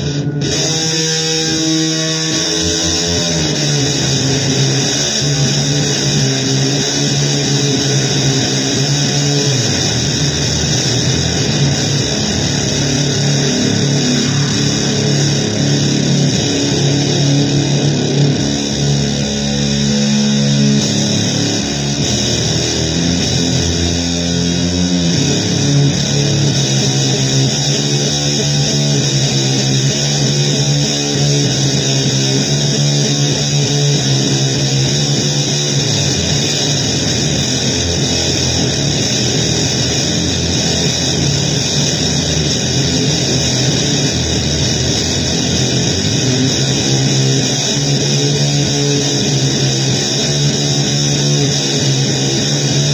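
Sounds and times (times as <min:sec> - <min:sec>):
low plucked guitar notes: 0:03.4 - 0:34.2.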